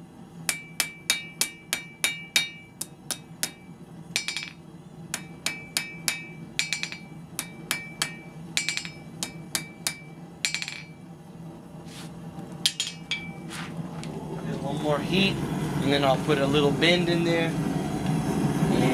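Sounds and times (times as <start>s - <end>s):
hammer striking iron on anvil: 0.4s - 11.1s, 12.6s - 13.6s.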